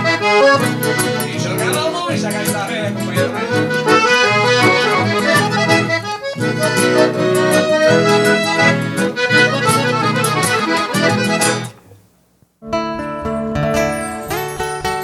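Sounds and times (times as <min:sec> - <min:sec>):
accordion band playing: 0:00.0 - 0:11.8
music with held chords: 0:00.0 - 0:12.0, 0:12.6 - 0:15.0.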